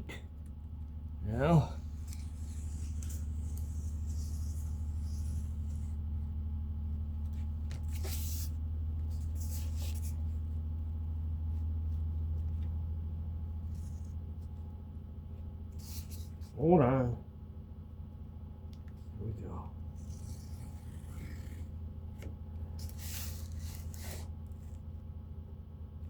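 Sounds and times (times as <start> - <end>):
low hum: 0.0 - 26.0
scraping rustles: 1.8 - 6.0.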